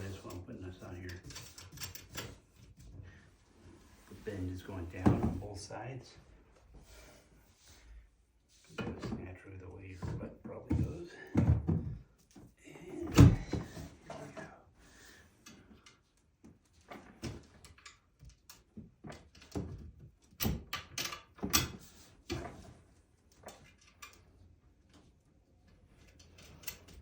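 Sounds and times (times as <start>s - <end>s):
furniture parts knocking and clicking: 5.0s - 5.5s, 10.0s - 14.3s.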